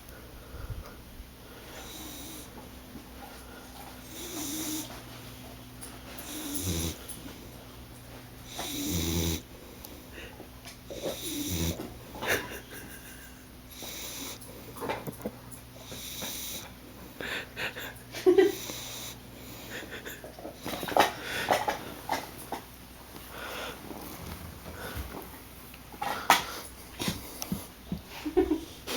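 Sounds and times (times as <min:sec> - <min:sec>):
dog snoring: 0:01.6 - 0:02.6, 0:04.0 - 0:05.1, 0:06.1 - 0:07.6, 0:08.4 - 0:13.1, 0:13.7 - 0:14.8, 0:15.8 - 0:16.8, 0:18.4 - 0:22.3.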